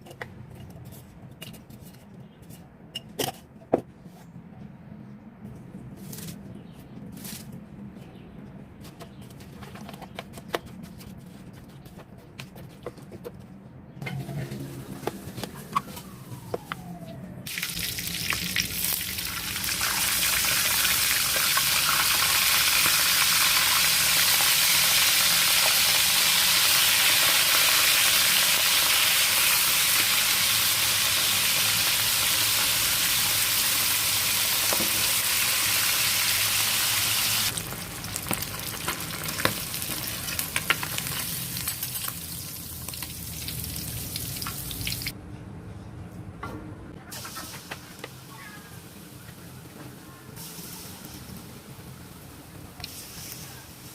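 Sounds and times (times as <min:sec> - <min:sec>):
food sizzling in hot oil: 0:17.5 - 0:45.1.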